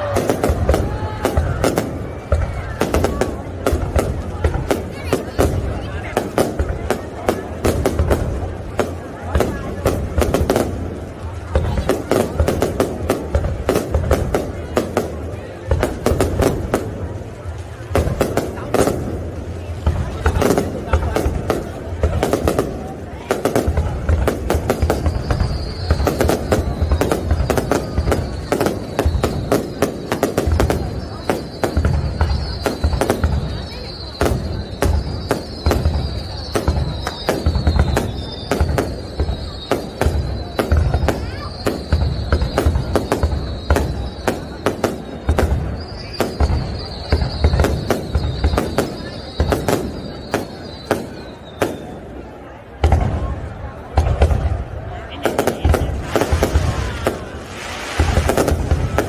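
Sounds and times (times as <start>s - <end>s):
fireworks bangs: 0.0s - 59.0s
thin high whistle: 24.9s - 52.2s
firework shells cracking: 55.4s - 59.0s.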